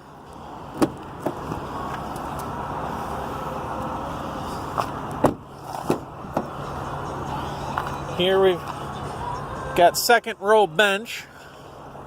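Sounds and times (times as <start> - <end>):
steady outdoor hum: 0.0 - 12.0
vehicle door clicks and knocks: 0.7 - 1.6, 4.8 - 6.5.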